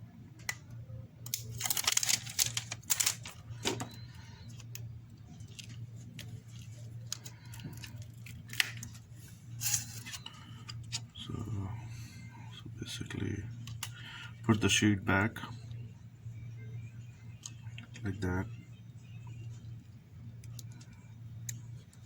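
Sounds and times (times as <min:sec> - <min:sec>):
low hum: 0:00.0 - 0:22.0
plastic film peeling: 0:01.2 - 0:09.1.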